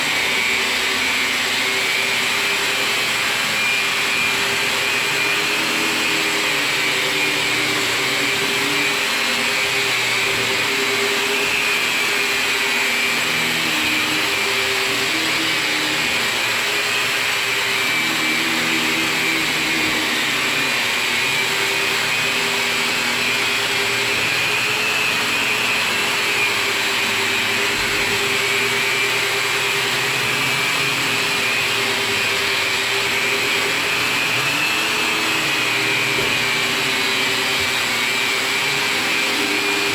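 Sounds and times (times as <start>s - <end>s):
electric drywall sander running: 0.0s - 39.9s.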